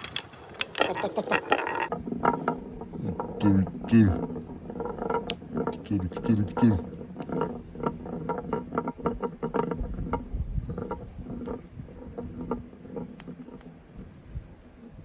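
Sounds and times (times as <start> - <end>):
marbles rolling on wooden track: 0.0 - 15.0.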